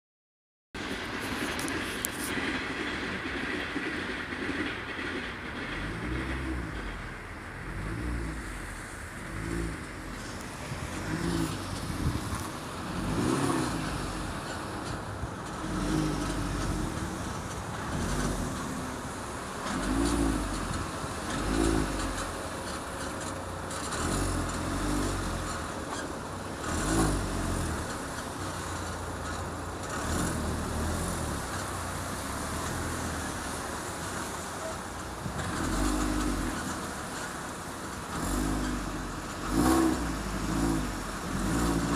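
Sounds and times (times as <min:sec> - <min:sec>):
car suspension creaking: 0:00.8 - 0:41.9
low rumble: 0:05.5 - 0:22.3.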